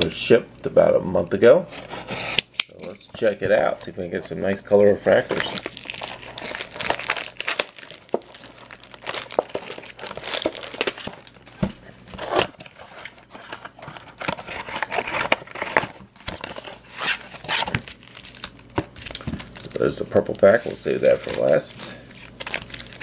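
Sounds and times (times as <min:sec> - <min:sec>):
packaging crinkling: 0:05.0 - 0:23.0
packaging ripping: 0:05.1 - 0:23.0.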